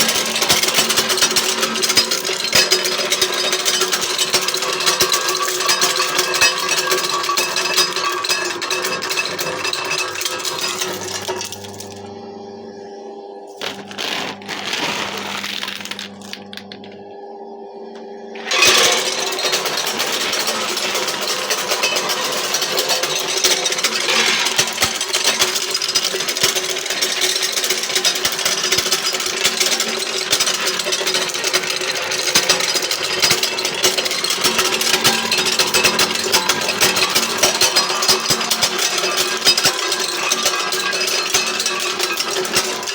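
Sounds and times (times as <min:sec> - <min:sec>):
machine motor humming: 0:10.2 - 0:21.3
nuts cracking clatter: 0:13.6 - 0:17.0.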